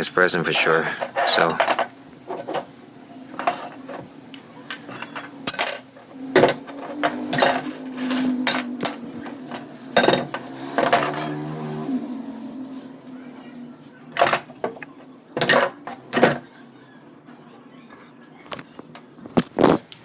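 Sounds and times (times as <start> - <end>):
metal vise parts clinking: 1.0 - 2.7, 4.7 - 11.5, 14.2 - 16.4.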